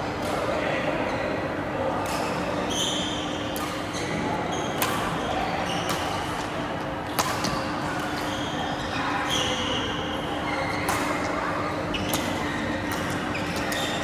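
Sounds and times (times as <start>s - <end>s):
shoes squeaking on court floor: 2.1s - 6.3s, 11.9s - 14.0s.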